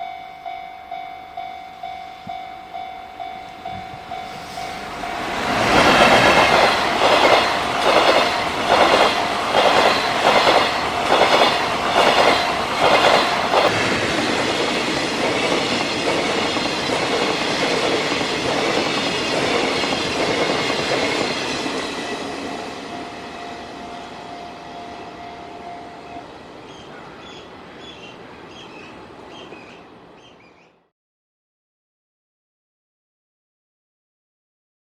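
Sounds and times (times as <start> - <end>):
freight train passing: 0.0 - 30.8
train wheels clattering over rail joints: 5.3 - 22.6.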